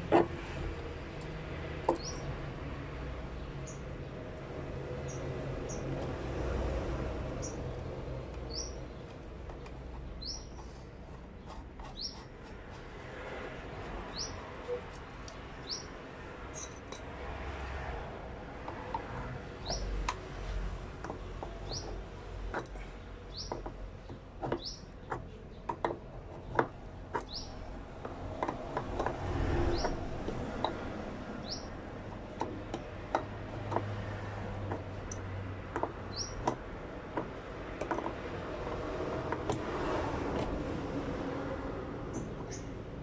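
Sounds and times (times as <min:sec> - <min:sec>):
metal parts and tools clicking: 0:16.4 - 0:17.7, 0:18.6 - 0:39.7.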